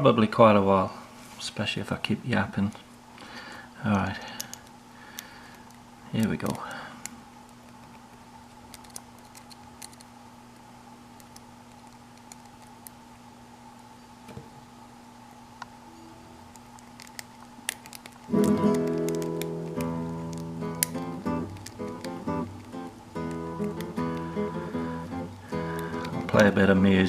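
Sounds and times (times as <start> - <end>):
low steady hum: 0.0 - 27.0
lock picks clicking: 8.7 - 10.1, 16.5 - 24.3
acoustic guitar music: 18.3 - 27.0.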